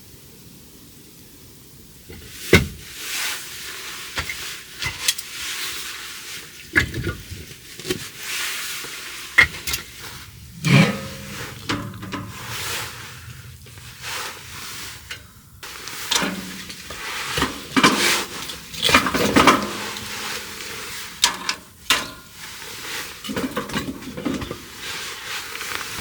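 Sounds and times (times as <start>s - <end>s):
cookware clinking and scraping: 9.4s - 13.2s, 15.0s - 22.3s, 23.2s - 25.1s.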